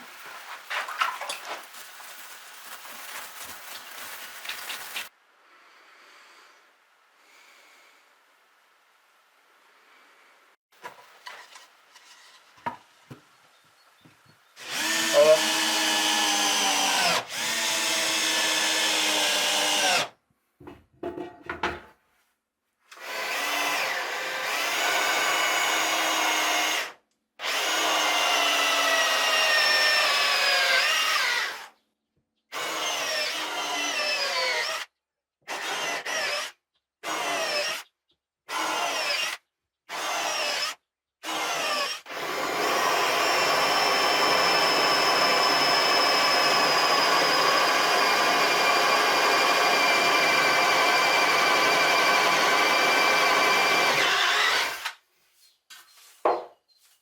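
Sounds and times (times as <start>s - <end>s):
power drill motor whine: 14.6s - 20.0s, 41.3s - 54.9s.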